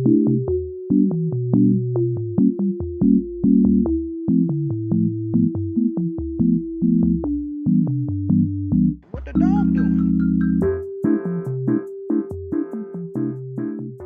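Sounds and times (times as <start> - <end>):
upbeat electronic music: 9.2 - 14.0.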